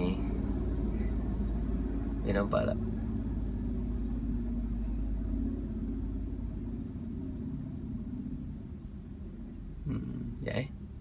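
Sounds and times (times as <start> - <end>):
low engine rumble: 0.0 - 11.0.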